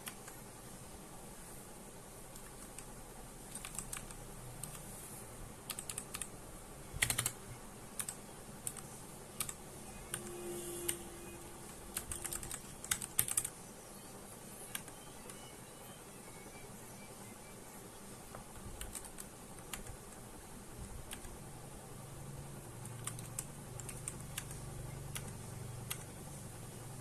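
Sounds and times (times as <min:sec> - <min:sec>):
mechanical keyboard typing: 0:02.3 - 0:02.9, 0:03.5 - 0:04.9, 0:05.7 - 0:06.3, 0:07.0 - 0:07.4, 0:08.0 - 0:10.3, 0:11.6 - 0:13.5, 0:14.7 - 0:15.5, 0:18.3 - 0:20.2, 0:21.1 - 0:21.4, 0:22.7 - 0:26.2.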